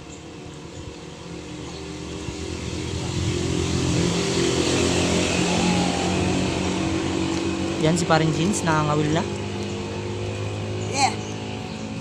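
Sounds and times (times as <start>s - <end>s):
motor engine approaching: 0.0s - 12.0s.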